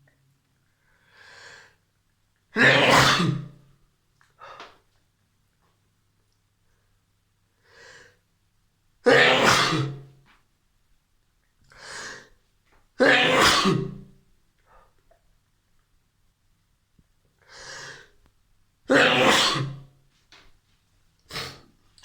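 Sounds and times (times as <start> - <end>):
person sneezing: 2.6 - 3.5, 9.1 - 10.0, 13.0 - 14.0, 18.9 - 19.9, 21.3 - 21.7.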